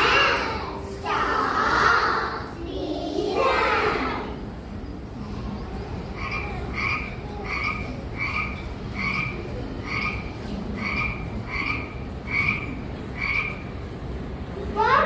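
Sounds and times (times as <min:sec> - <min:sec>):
frog croaking: 0:06.1 - 0:13.6.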